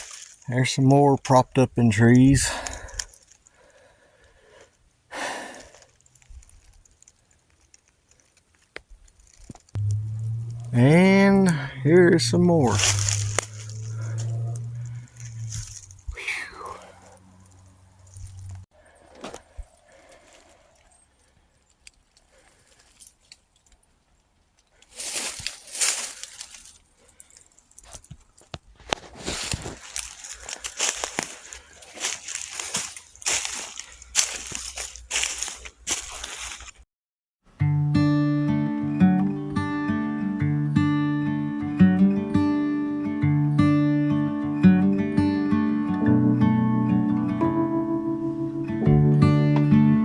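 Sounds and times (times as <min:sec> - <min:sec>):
footsteps crunching dry leaves: 0:00.0 - 0:00.5, 0:12.2 - 0:16.3, 0:17.4 - 0:18.6, 0:24.9 - 0:28.1, 0:28.7 - 0:36.8
twigs snapping: 0:00.0 - 0:00.5, 0:05.6 - 0:09.8, 0:12.6 - 0:16.2, 0:17.0 - 0:18.6, 0:24.8 - 0:36.8
low rustling: 0:09.6 - 0:18.7
noisy exhale: 0:15.0 - 0:17.3.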